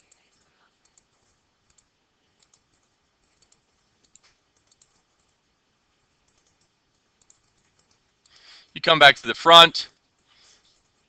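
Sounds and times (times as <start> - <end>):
computer mouse clicks: 0.0 - 5.4, 6.2 - 8.4.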